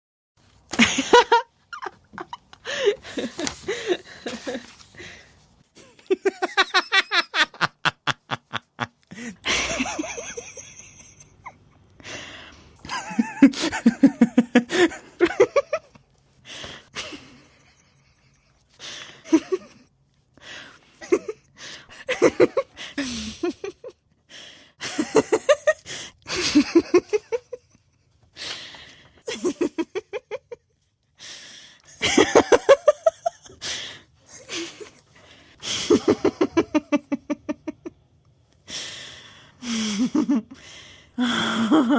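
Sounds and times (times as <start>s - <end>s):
woman giggling and laughing: 0.7s - 4.9s, 5.8s - 11.6s, 12.8s - 16.0s, 21.0s - 24.0s, 24.8s - 27.9s, 31.9s - 33.6s, 41.2s - 41.9s.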